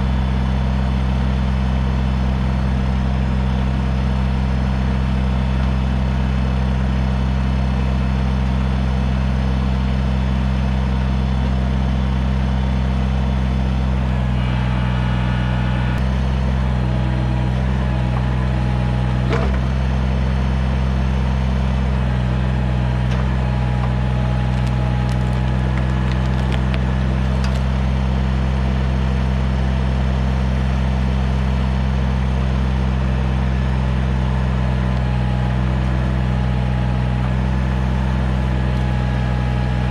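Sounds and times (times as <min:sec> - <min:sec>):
diesel tractor engine running: 0:00.0 - 0:39.9
sharp cracks: 0:24.4 - 0:27.7.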